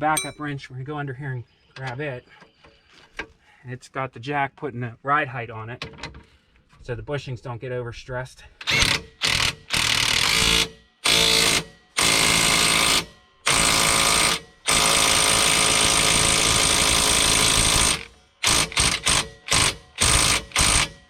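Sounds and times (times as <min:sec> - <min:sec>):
impact wrench bursts: 0:08.6 - 0:21.0.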